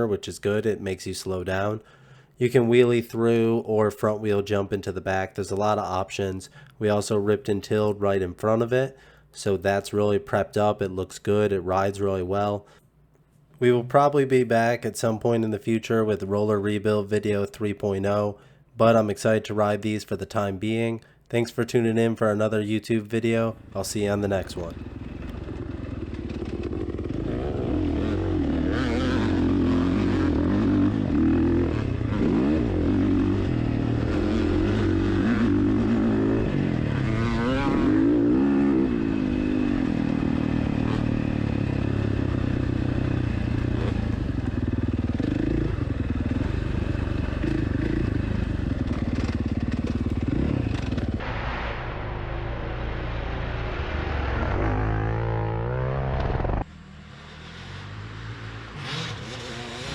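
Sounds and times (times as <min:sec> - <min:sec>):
dirt bike engine revving: 0:24.5 - 0:51.8, 0:52.7 - 0:59.9.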